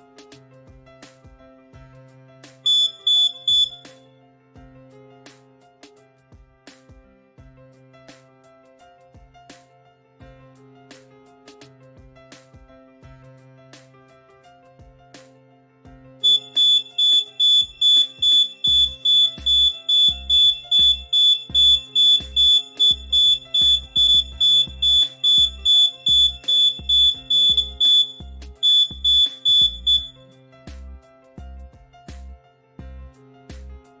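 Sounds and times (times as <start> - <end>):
background music: 0.0 - 34.0
rapid high-pitched alarm beeping: 2.7 - 3.8, 16.2 - 30.1.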